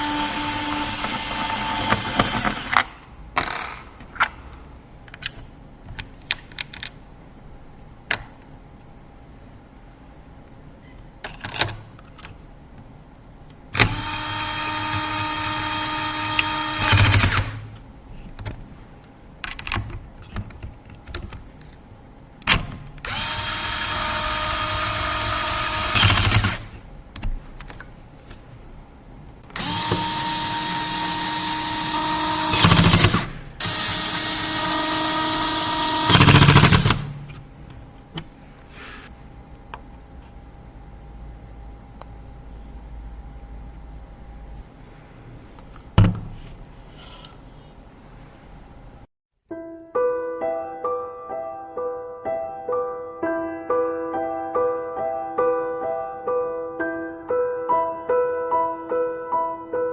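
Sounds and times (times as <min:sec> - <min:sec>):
electric screwdriver running: 0:00.0 - 0:02.8, 0:13.8 - 0:17.6, 0:23.0 - 0:26.6, 0:29.6 - 0:37.0
parts clicking and tapping: 0:00.6 - 0:07.0.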